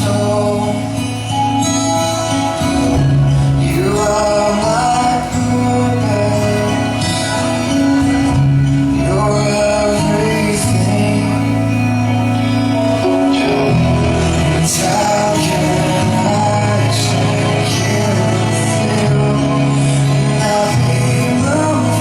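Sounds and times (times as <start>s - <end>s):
song with singing voice: 0.0s - 22.0s.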